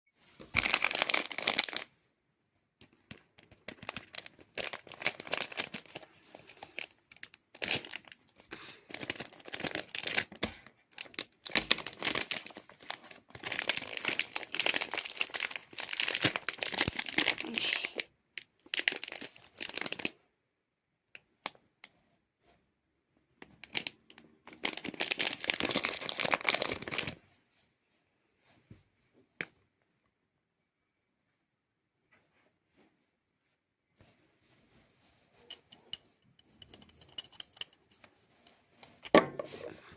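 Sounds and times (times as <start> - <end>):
packaging crinkling: 0.5 - 1.9, 2.8 - 20.2, 23.4 - 27.2
toy packaging tearing: 0.6 - 1.9, 3.1 - 20.1, 23.6 - 27.2.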